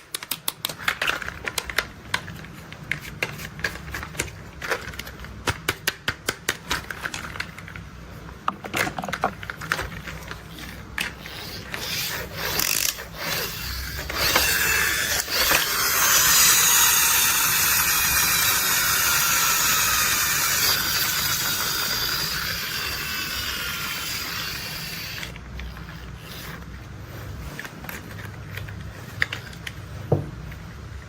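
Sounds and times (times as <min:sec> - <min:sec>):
toy gear whirring: 0:09.4 - 0:29.9
toy ratchety clicks: 0:11.2 - 0:26.5.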